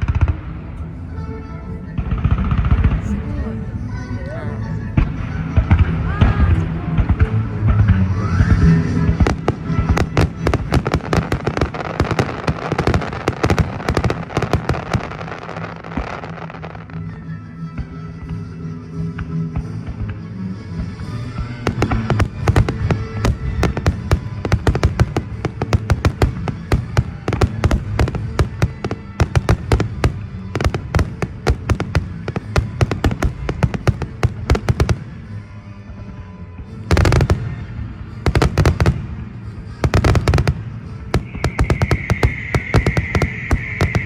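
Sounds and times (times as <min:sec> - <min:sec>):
music: 0:00.0 - 0:44.0
heavy fireworks booms: 0:02.0 - 0:16.9, 0:20.8 - 0:35.5, 0:36.8 - 0:44.0
fireworks crackling bangs: 0:05.0 - 0:16.9, 0:20.8 - 0:35.4, 0:36.9 - 0:44.0.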